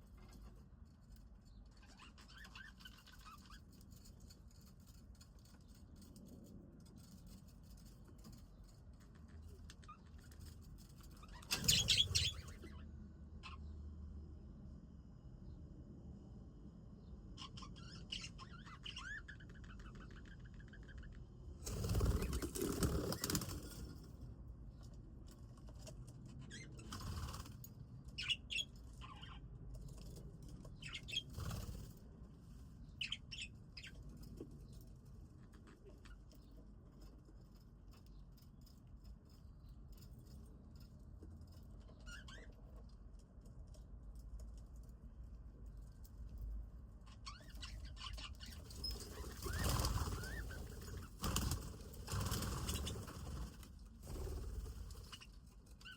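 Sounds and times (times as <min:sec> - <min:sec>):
budgies chirping: 0:01.8 - 0:03.6, 0:11.2 - 0:12.8, 0:17.4 - 0:21.2, 0:28.2 - 0:29.4, 0:30.8 - 0:31.7, 0:33.0 - 0:34.0, 0:47.2 - 0:51.6, 0:52.2 - 0:53.2
budgies fluttering wings: 0:09.8 - 0:12.8, 0:21.6 - 0:24.0, 0:26.4 - 0:29.4, 0:30.7 - 0:32.0, 0:47.2 - 0:55.9.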